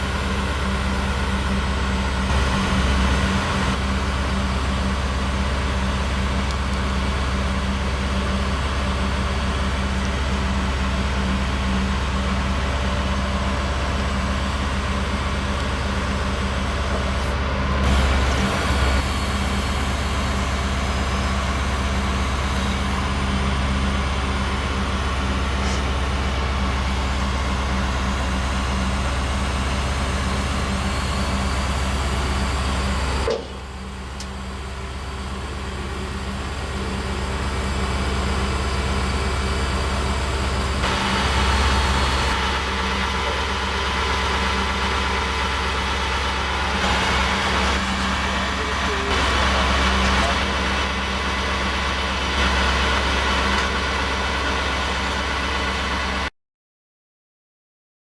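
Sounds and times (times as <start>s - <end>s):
truck diesel engine running: 0.0s - 56.3s.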